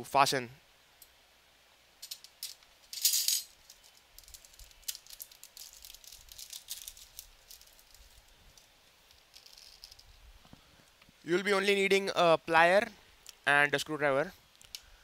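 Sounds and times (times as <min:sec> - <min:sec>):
metal parts rattling: 0:02.0 - 0:10.1
metal parts clicking and scraping: 0:02.0 - 0:10.2.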